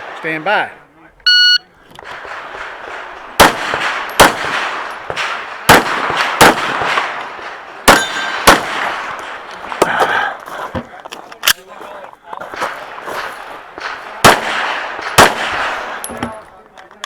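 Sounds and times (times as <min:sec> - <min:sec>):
pistol shots: 0:01.9 - 0:10.3, 0:12.5 - 0:16.6.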